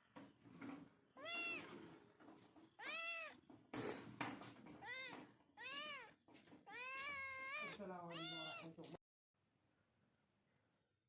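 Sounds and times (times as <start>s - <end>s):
cat meowing: 1.2s - 1.7s, 2.8s - 3.4s, 4.8s - 8.8s.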